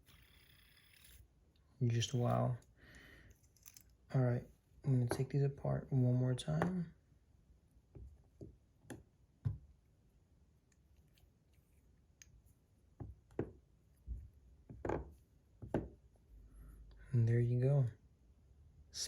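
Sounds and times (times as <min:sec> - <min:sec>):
metal parts clicking and knocking: 0:03.3 - 0:04.0.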